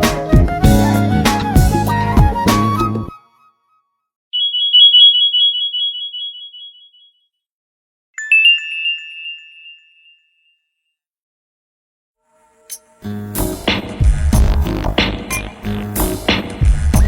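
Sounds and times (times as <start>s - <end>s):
bright electronic chime: 4.4s - 7.1s
melodic ringtone: 4.4s - 7.2s, 8.2s - 10.4s.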